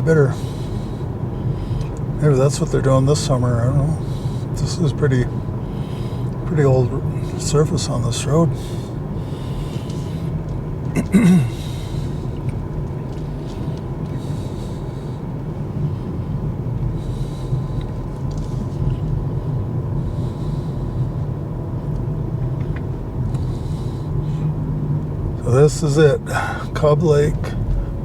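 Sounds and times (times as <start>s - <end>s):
tyre and road rumble in car: 0.0s - 28.0s.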